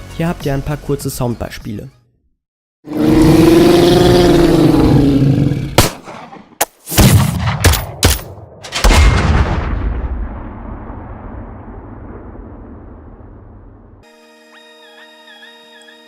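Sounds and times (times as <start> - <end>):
sharp gunshot-like blasts: 5.8 - 6.3, 6.9 - 13.2
rising and falling rumble: 8.4 - 14.0.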